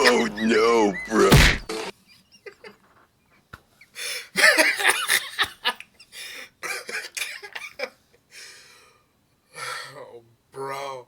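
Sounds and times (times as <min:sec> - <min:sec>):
man laughing hard: 0:00.0 - 0:01.8.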